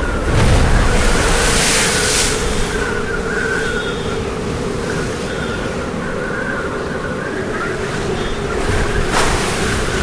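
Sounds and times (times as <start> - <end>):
wind rushing: 0.0 - 5.0
waves breaking: 0.0 - 6.2, 7.4 - 10.0.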